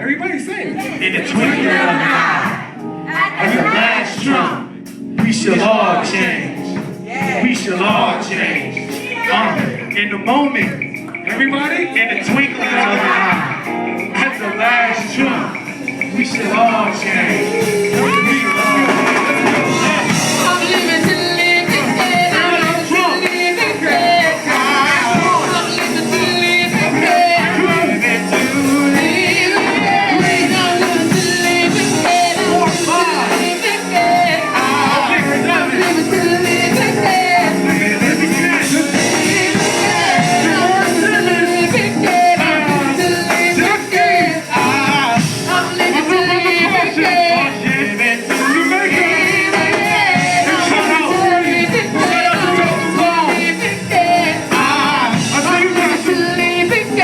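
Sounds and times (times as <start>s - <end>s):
voices singing: 0.0s - 57.0s
rock band playing: 0.5s - 57.0s.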